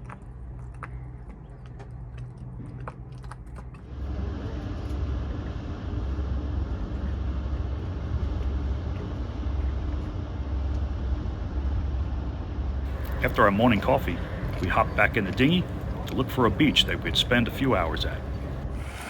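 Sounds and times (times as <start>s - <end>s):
wind: 0.0s - 19.0s
low hum: 12.9s - 19.0s
outboard motor running: 12.9s - 19.0s
water rushing: 12.9s - 19.0s.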